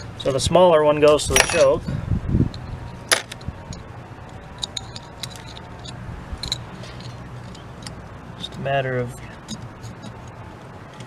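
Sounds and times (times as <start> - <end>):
small metal parts clicking: 2.5 - 11.0.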